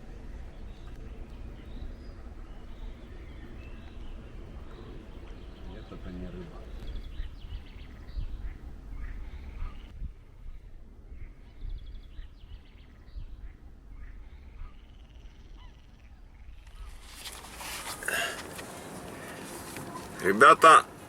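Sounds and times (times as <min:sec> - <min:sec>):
wind rumbling on microphone: 0:00.0 - 0:20.2
small birds chirping: 0:00.0 - 0:21.0
rushing rustling noise: 0:16.6 - 0:21.0.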